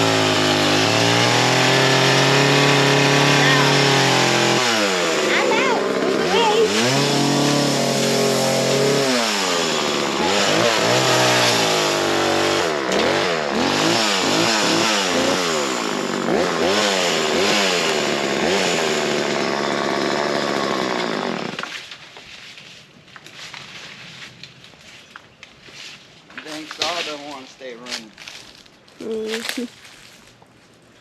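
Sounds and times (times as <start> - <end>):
chainsaw engine revving: 0.0 - 21.8.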